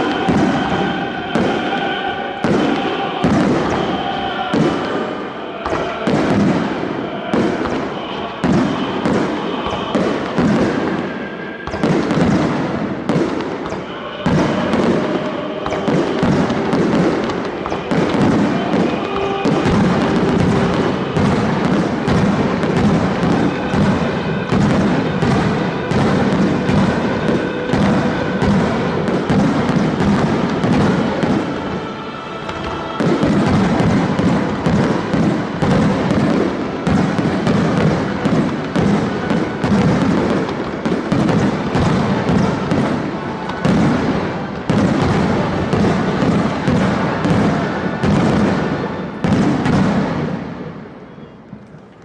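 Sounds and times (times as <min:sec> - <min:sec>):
fireworks booming and crackling: 0:00.0 - 0:52.0
music: 0:00.0 - 0:52.0.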